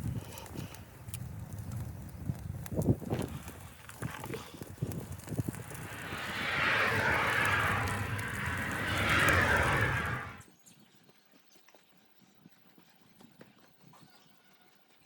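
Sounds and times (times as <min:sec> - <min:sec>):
wind rumble on microphone: 0:00.0 - 0:10.4
blizzard wind rushing: 0:04.6 - 0:10.4.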